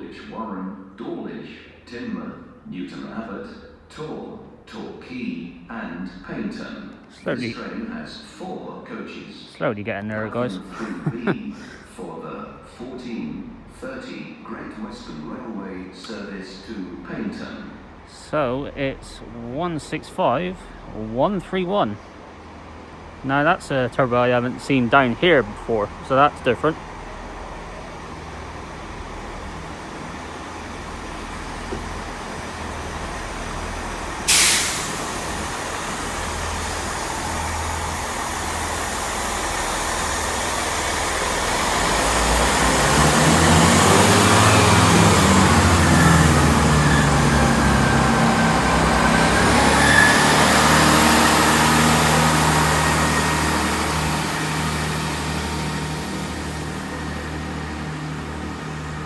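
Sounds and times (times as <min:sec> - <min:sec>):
train engine drone: 0:09.6 - 0:14.0, 0:16.1 - 0:59.0
high squeal: 0:28.8 - 0:59.0.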